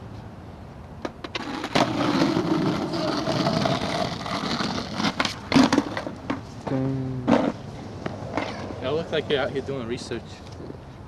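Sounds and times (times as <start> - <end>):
skateboard wheels rolling on pavement: 0.0 - 11.0
skateboard clacks: 1.0 - 6.4
skateboard impact: 1.0 - 6.4, 7.2 - 9.0.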